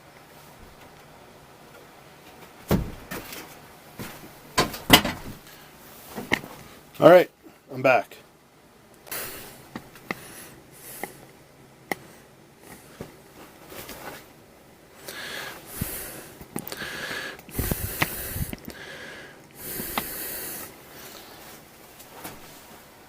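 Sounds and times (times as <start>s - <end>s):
person breathing heavily: 9.1s - 11.3s, 15.0s - 21.6s.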